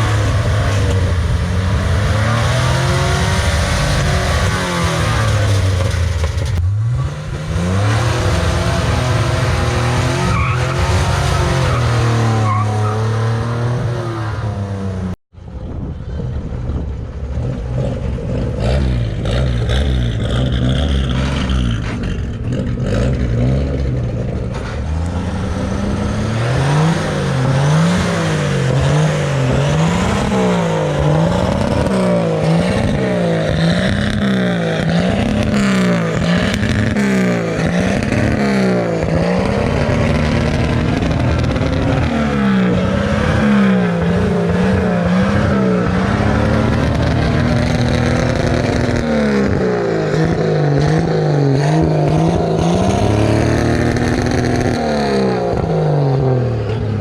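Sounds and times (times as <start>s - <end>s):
pickup truck engine revving: 17.4s - 56.8s.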